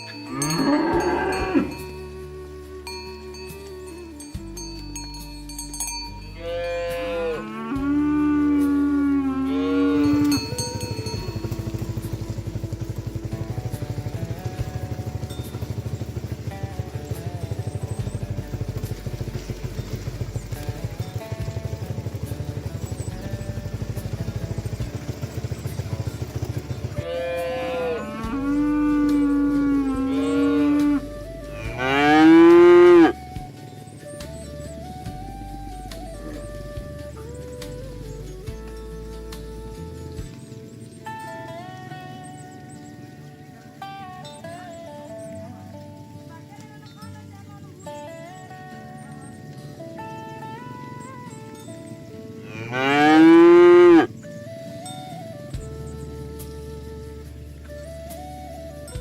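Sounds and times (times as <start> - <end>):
cow mooing: 0.0 - 2.1, 6.4 - 12.4, 27.0 - 33.2, 52.4 - 54.1
cowbells clinking: 0.0 - 2.2, 2.9 - 7.7, 9.4 - 30.8, 40.4 - 54.2
fast pulsing small engine: 7.1 - 43.8.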